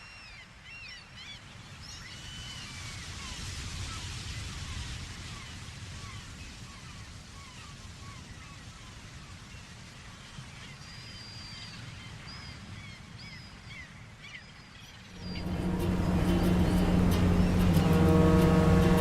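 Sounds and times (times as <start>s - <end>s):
birds chirping: 15.0s - 19.0s
low outdoor rumble: 15.2s - 19.0s.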